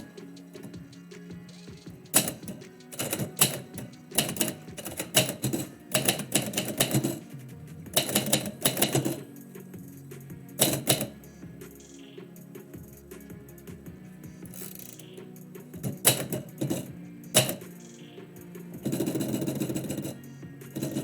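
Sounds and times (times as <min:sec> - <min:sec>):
background music: 0:00.0 - 0:21.0
typewriter keys clacking: 0:02.2 - 0:07.2, 0:08.0 - 0:09.3, 0:10.6 - 0:11.2, 0:15.8 - 0:17.6.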